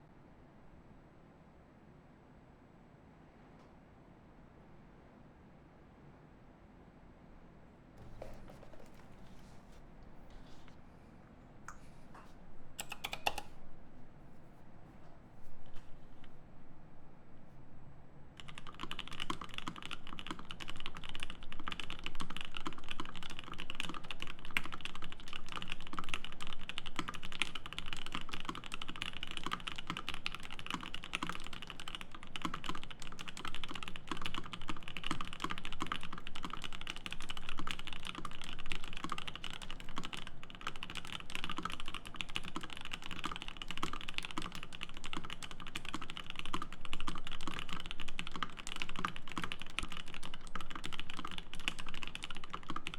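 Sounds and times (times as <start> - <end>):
mechanical keyboard typing: 12.8 - 13.6, 18.4 - 52.9.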